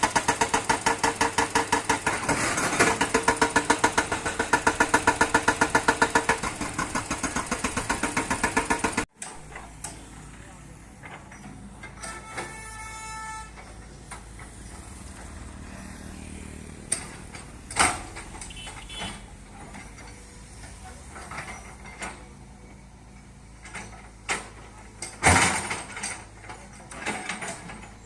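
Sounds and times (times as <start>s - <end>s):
construction machinery humming: 0.0s - 25.2s
metallic clanks and knocks: 16.8s - 22.4s, 23.6s - 28.0s.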